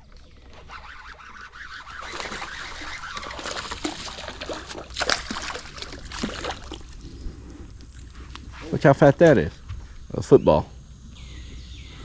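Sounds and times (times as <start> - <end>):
fish thrashing and splashing water: 1.9 - 7.2.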